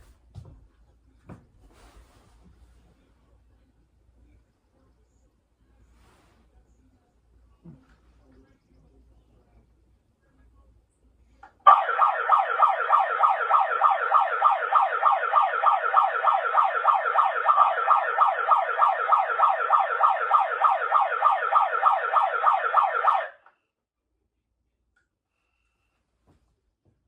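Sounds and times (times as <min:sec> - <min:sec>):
megaphone siren warbling: 0:11.7 - 0:23.4.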